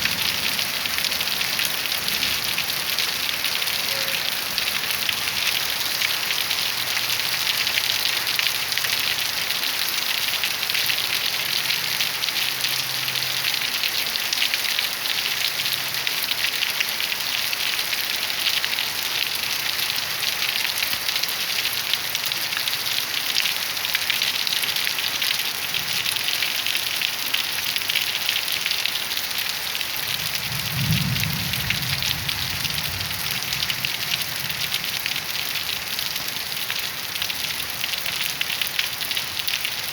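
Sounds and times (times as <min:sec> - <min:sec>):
distant thunder rumble: 0:00.0 - 0:05.0, 0:30.2 - 0:35.0
heavy rain falling: 0:00.0 - 0:39.9.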